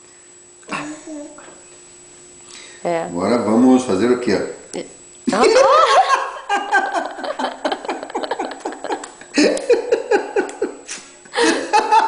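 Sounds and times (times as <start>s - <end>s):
person laughing: 5.3s - 12.0s.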